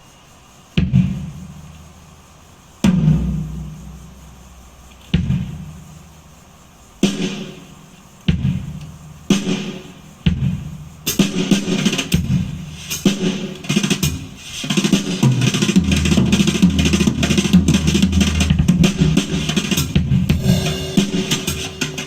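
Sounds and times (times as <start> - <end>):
steady drum beat: 0.8 - 22.0
drum hits: 2.8 - 4.4, 5.1 - 5.8, 8.3 - 22.0.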